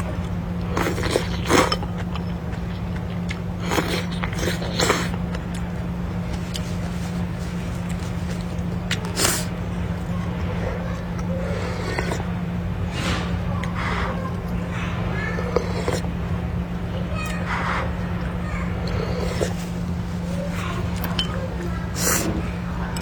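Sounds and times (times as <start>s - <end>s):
steady low hum: 0.0s - 23.0s
person slurping noodles: 11.4s - 12.3s, 15.4s - 16.1s, 18.8s - 20.4s.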